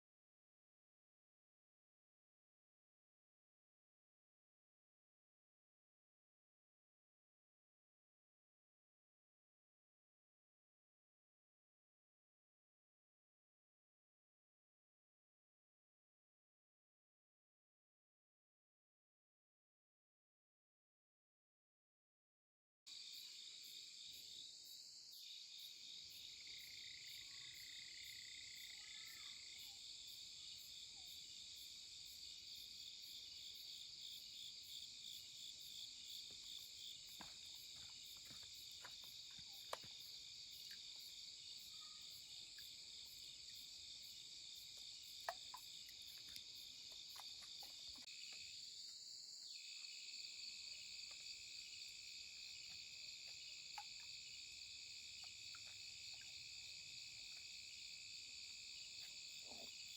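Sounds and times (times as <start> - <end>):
insects chirring: 22.9 - 59.9.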